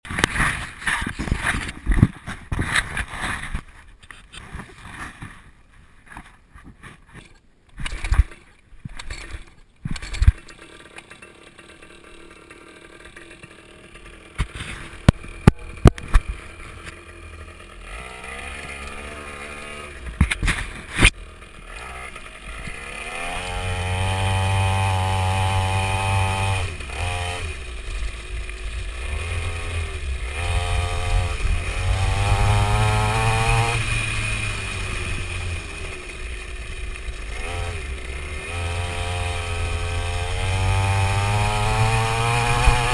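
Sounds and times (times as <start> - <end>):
dirt bike engine revving: 10.0 - 42.9.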